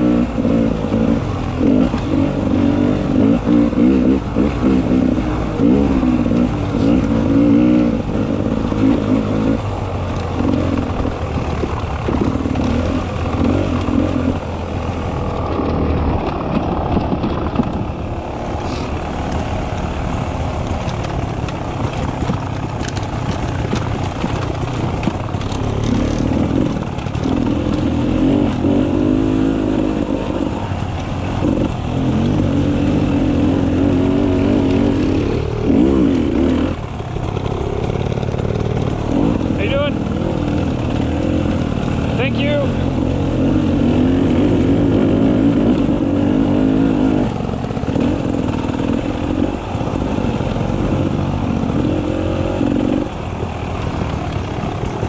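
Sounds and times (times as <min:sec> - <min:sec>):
dirt bike engine revving: 0:00.0 - 0:55.0
sharp clatters: 0:08.2 - 0:28.7.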